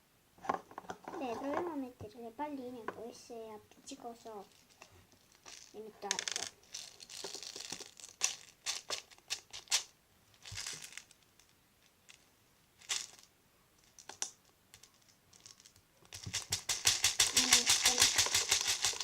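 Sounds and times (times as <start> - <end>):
plastic container rattling: 4.4 - 9.8, 10.4 - 11.2, 13.9 - 19.0
foam beads clicking and rustling: 4.4 - 19.0.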